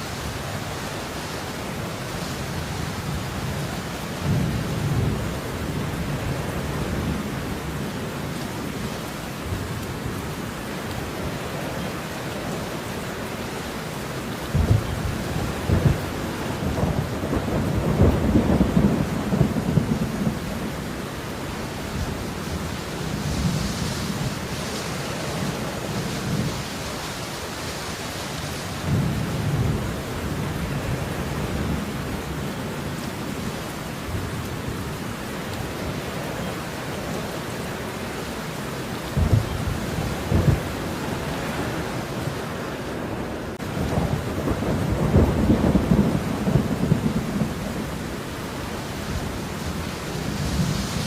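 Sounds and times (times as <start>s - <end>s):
thunder rumbling: 0.0s - 10.3s, 14.4s - 27.5s, 28.5s - 33.4s, 39.0s - 51.0s
rain falling: 0.0s - 51.0s.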